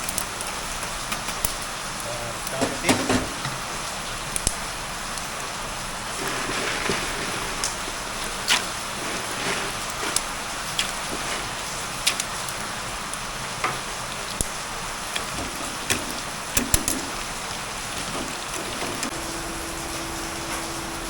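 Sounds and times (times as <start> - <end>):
sharp pops in frying oil: 0.0 - 1.8, 4.2 - 5.3, 13.6 - 17.3
oil sizzling: 0.3 - 21.0
steady hum: 18.9 - 21.0.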